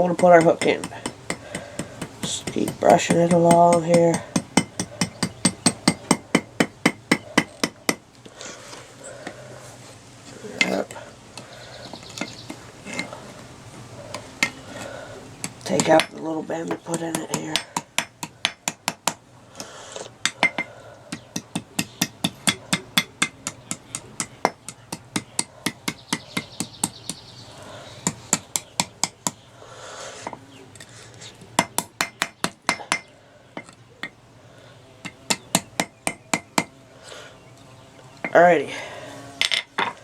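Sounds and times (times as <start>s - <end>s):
hammer striking nail on anvil: 0.0s - 8.0s, 20.2s - 27.2s, 31.6s - 33.1s, 35.0s - 36.7s.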